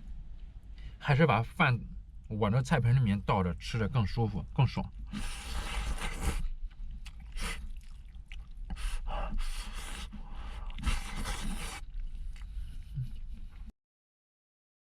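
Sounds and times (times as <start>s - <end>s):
slurping: 4.9s - 13.7s.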